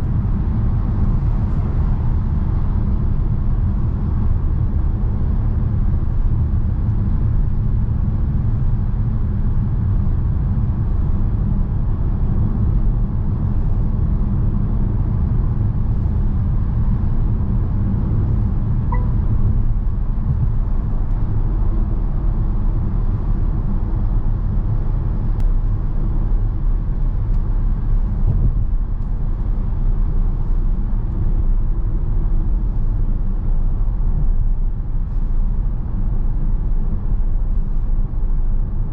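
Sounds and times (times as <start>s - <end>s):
van engine cruising: 0.0s - 38.9s
faint beep: 18.9s - 19.2s.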